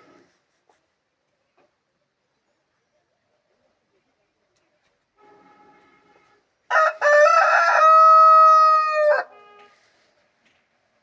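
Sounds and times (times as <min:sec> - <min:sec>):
rooster crowing: 0:06.7 - 0:09.4.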